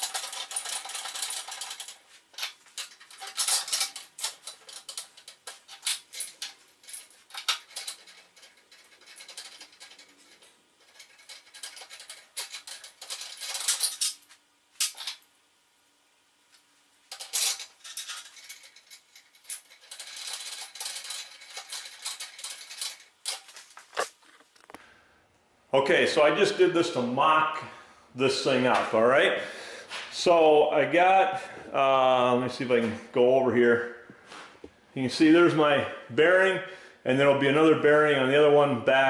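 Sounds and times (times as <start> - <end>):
small metal parts clinking: 0.0 - 15.4, 17.0 - 24.8.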